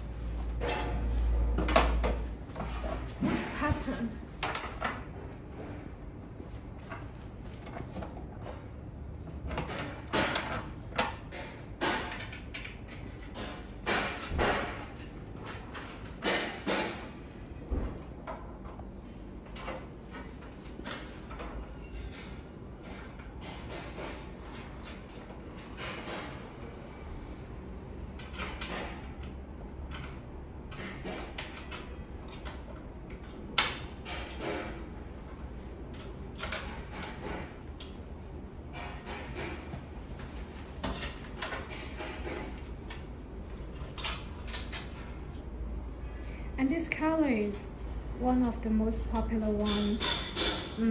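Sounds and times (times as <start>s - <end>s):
chair parts scraping and sliding: 0.0s - 4.8s
chair parts knocking and clattering: 0.0s - 26.8s, 28.2s - 45.5s, 49.5s - 50.9s.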